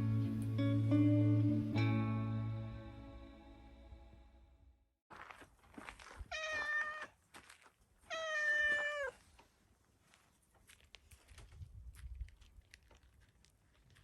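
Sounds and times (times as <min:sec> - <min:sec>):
cat meowing: 0:06.3 - 0:07.1, 0:08.1 - 0:09.2.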